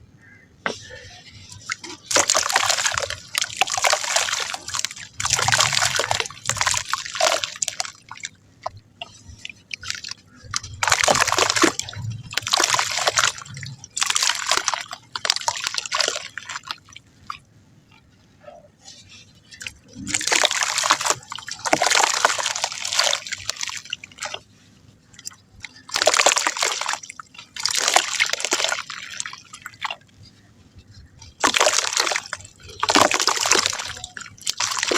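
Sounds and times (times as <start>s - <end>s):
mud crumbling into water: 1.6s - 9.2s, 9.8s - 16.8s, 19.4s - 24.4s, 25.7s - 30.0s, 31.2s - 34.9s.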